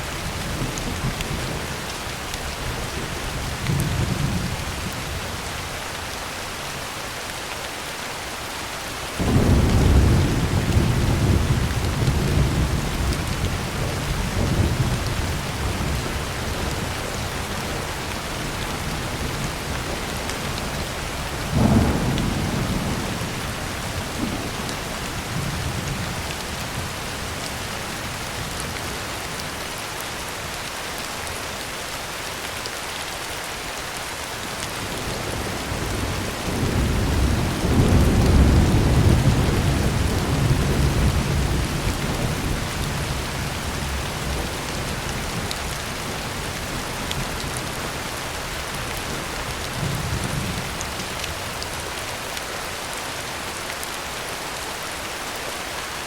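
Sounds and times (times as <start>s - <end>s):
heavy rain on a tin roof: 0.0s - 56.0s
thunder rumbling: 9.2s - 26.2s, 34.8s - 48.2s.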